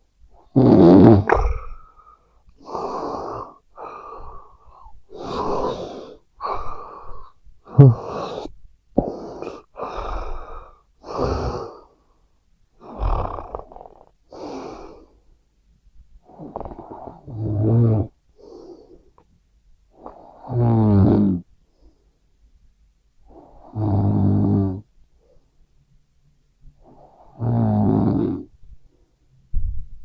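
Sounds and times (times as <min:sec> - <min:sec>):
person snoring: 0:00.5 - 0:04.4, 0:05.1 - 0:11.8, 0:12.8 - 0:14.8.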